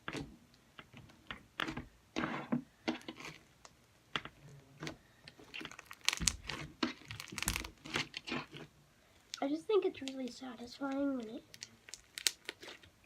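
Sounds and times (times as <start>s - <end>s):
slime squished by hand: 4.2s - 8.6s.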